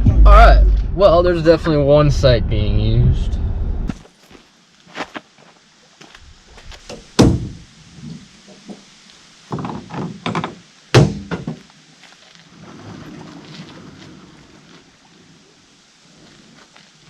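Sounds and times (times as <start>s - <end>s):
heavy thunks: 6.9s - 7.6s, 9.5s - 11.6s
small knocks and rattles: 9.5s - 11.7s.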